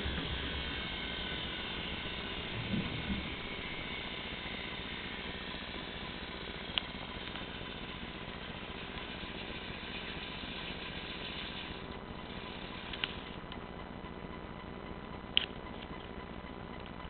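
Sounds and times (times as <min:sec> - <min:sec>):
washing machine running: 0:00.0 - 0:14.2
sharp click: 0:15.3 - 0:16.1.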